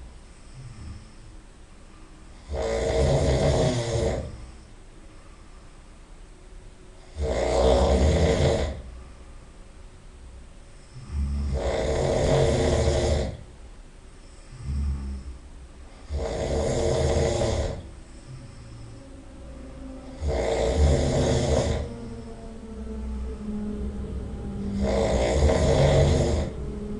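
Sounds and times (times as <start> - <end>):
quiet breathing: 0.0 - 26.9
person snoring loudly: 0.5 - 1.3, 2.4 - 4.6, 7.0 - 8.9, 10.8 - 13.5, 14.3 - 22.6, 24.4 - 26.9.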